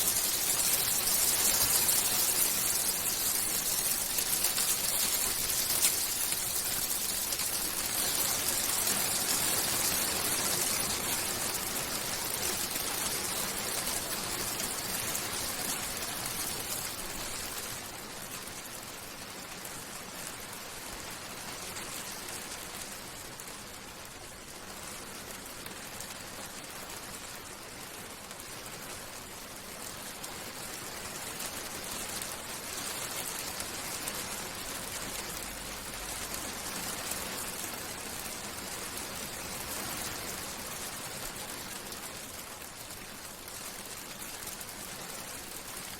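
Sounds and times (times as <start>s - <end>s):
hailstones striking: 0.0s - 10.8s.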